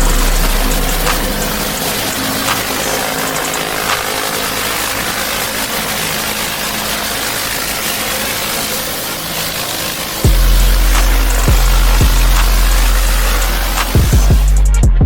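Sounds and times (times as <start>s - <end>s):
loud deep low sound: 0.0s - 2.2s, 10.3s - 15.0s
high-pressure water spray hissing: 0.0s - 14.6s
pressure washer engine running: 0.0s - 14.7s.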